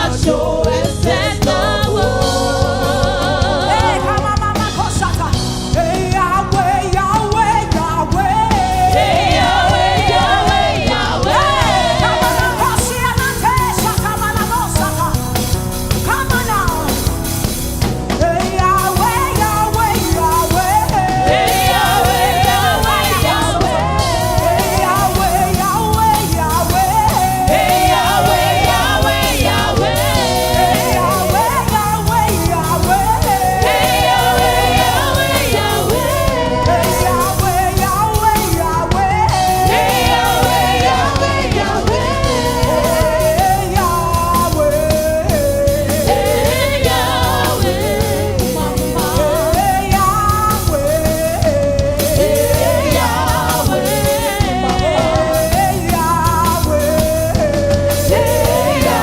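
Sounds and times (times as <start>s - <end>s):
backing choir voices: 0.0s - 4.4s, 8.3s - 14.0s, 20.0s - 59.0s
instrumental accompaniment: 0.0s - 59.0s
person singing with vibrato: 18.1s - 59.0s.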